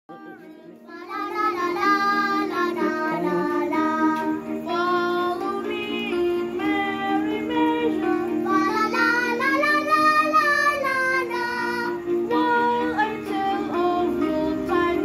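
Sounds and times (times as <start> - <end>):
backing music: 0.1 - 15.0
children singing carol: 0.1 - 15.0.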